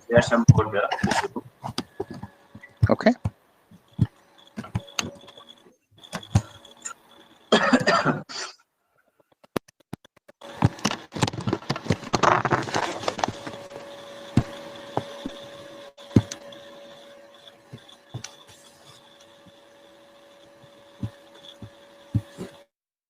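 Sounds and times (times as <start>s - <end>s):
sharp clicks and knocks: 9.2s - 13.6s
faint hum with thin whine: 10.4s - 22.7s.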